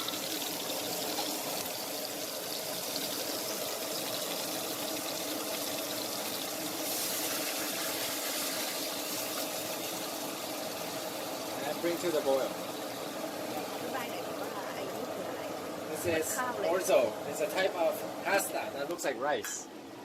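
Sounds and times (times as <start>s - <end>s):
watery hiss from a pan: 0.0s - 13.1s.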